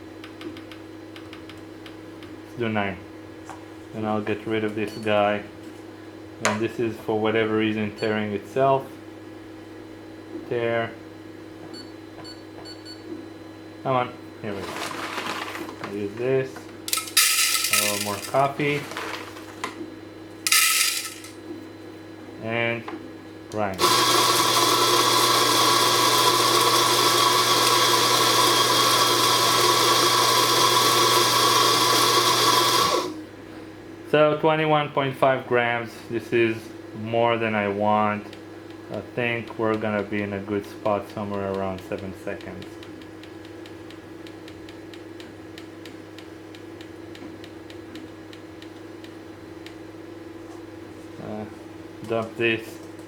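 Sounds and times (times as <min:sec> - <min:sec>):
coffee grinder whirring: 0:16.9 - 0:18.5, 0:20.5 - 0:21.3, 0:23.8 - 0:33.2
printer hum with sharp ticks: 0:41.3 - 0:49.8.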